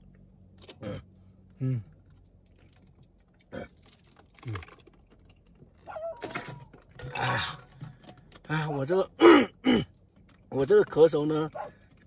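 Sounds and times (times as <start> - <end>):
handling clicks and knocks: 4.1 - 8.6
man coughing lightly: 9.2 - 9.9.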